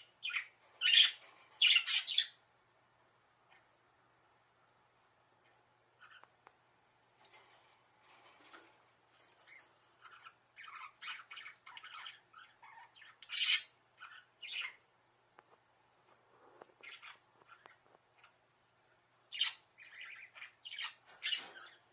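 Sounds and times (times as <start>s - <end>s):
budgerigars chirping: 0.0s - 2.4s, 6.0s - 6.3s, 9.4s - 14.9s, 16.8s - 18.4s, 19.3s - 21.9s.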